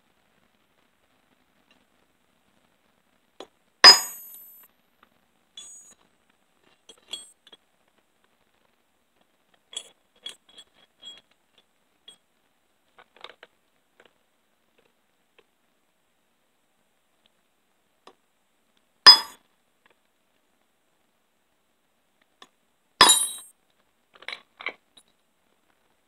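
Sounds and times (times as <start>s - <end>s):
metal-on-metal clank: 3.8s - 4.6s, 19.1s - 19.4s, 23.0s - 23.5s.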